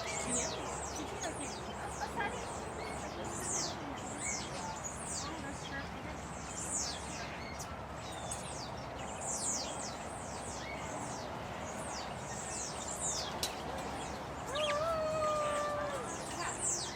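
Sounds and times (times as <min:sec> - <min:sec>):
small birds chirping: 0:00.0 - 0:16.9.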